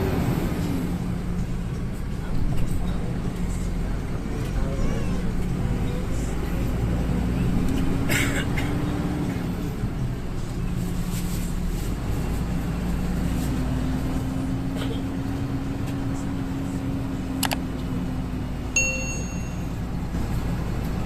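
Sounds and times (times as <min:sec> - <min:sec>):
bus engine hum and road noise: 0:00.0 - 0:21.0
short ringing ding: 0:18.8 - 0:19.8.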